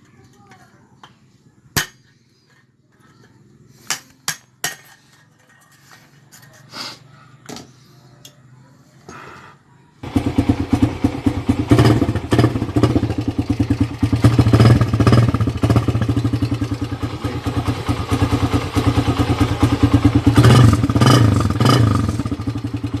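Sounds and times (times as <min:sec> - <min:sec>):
motorcycle engine revving: 0:10.0 - 0:23.0.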